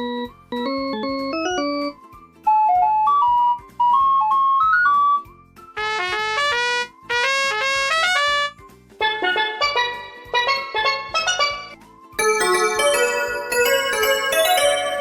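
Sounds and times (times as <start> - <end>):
brassy trumpet-like passage: 5.8 - 8.6
clear-toned melody: 5.8 - 15.0.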